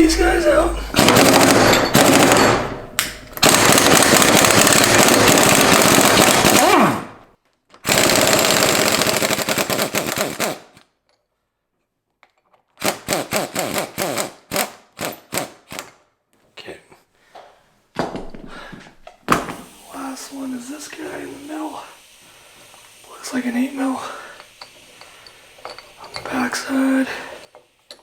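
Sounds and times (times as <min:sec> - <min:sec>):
impact wrench hammering: 0:00.0 - 0:06.7.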